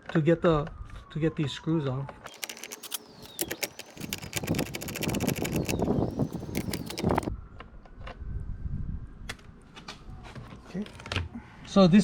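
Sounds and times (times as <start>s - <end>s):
ratchet clicking: 2.3s - 7.3s.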